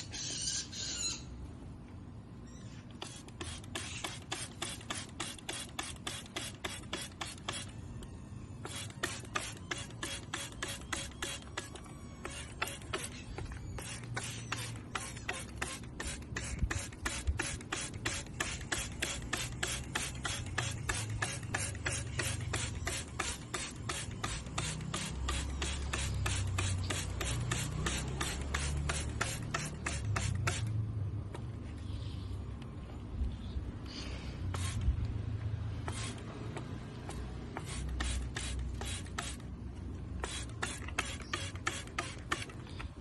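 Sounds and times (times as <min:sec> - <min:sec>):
spray bottle squirts: 0:02.9 - 0:07.8, 0:08.6 - 0:30.7, 0:34.5 - 0:34.9, 0:35.8 - 0:36.3, 0:37.0 - 0:39.5, 0:40.2 - 0:42.8.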